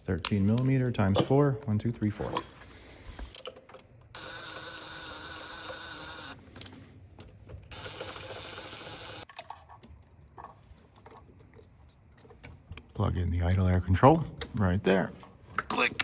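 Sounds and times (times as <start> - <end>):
cordless power tool running: 4.2 - 6.4.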